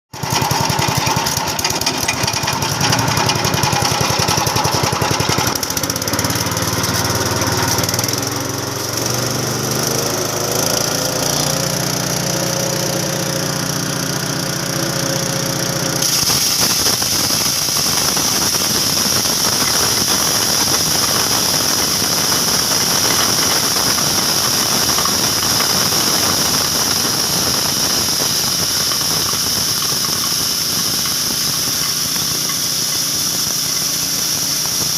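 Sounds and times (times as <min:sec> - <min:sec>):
chopper machine grinding: 0:00.1 - 0:34.9
strong high hiss: 0:16.0 - 0:34.9.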